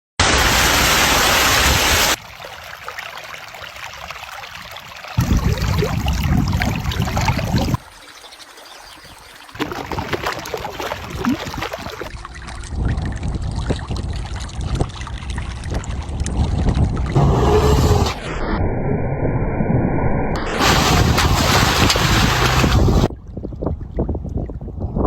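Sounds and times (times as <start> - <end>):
water trickling: 2.2 - 17.1
low rumble: 15.4 - 23.1.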